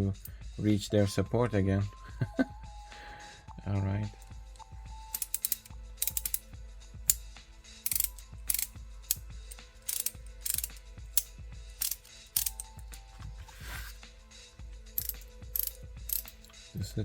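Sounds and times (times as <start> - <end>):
ratcheting wrench clicking: 5.0 - 13.1, 14.9 - 16.6.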